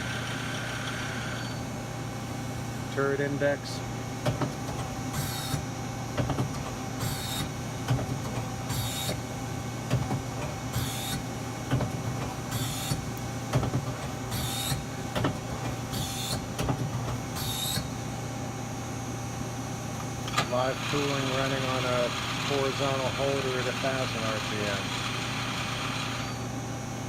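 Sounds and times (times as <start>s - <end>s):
machine hum: 0.0s - 27.0s
lathe turret indexing with hiss: 4.8s - 5.7s, 7.0s - 7.6s, 8.6s - 9.3s, 10.4s - 11.3s, 12.4s - 13.2s, 13.9s - 18.0s.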